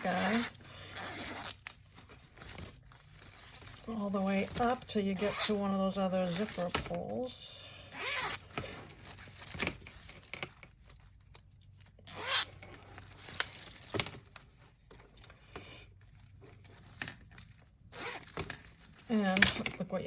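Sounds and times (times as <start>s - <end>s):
zipper slider scraping: 0.0s - 1.7s, 7.9s - 9.1s
zipper pulls clinking: 0.0s - 20.0s.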